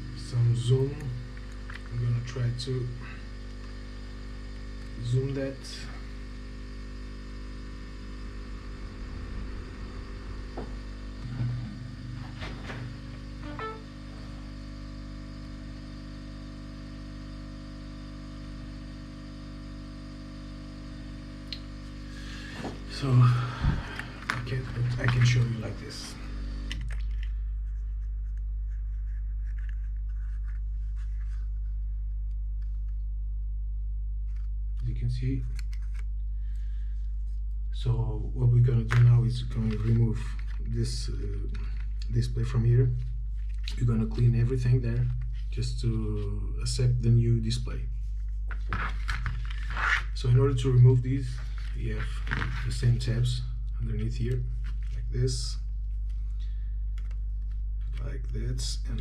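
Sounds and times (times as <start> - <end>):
electrical mains hum: 0.0 - 59.0
scratching of small parts handled: 48.5 - 50.1.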